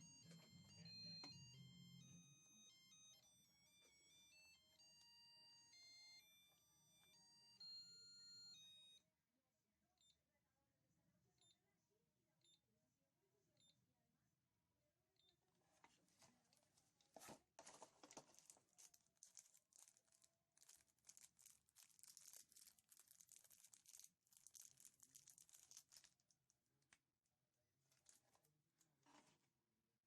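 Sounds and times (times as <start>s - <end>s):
crinkling and scratching handling: 15.6s - 27.0s, 27.8s - 29.5s.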